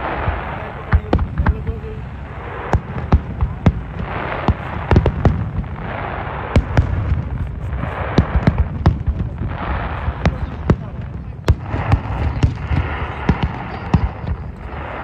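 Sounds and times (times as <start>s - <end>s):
background murmur: 0.0s - 15.0s
fireworks bangs: 0.0s - 15.0s.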